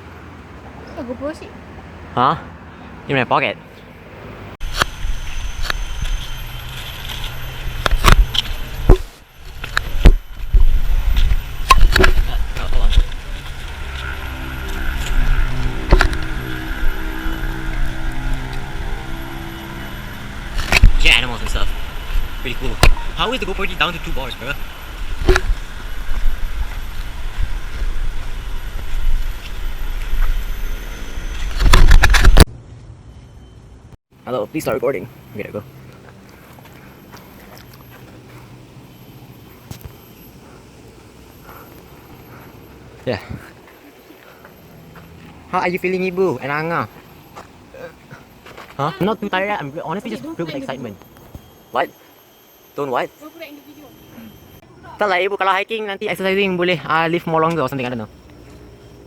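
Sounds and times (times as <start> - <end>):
low rumbling wind: 4.3 - 33.9.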